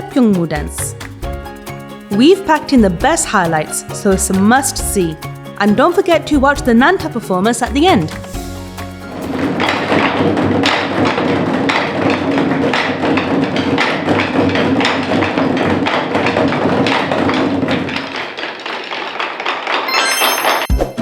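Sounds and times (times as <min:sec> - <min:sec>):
sharp woody percussion strikes: 0:00.0 - 0:11.8.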